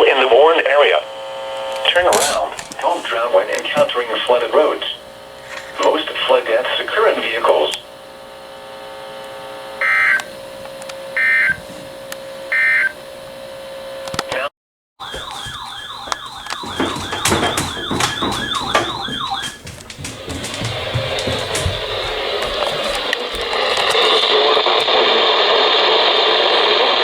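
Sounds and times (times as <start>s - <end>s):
warbling electronic alarm tone: 15.0s - 17.2s, 18.4s - 19.5s.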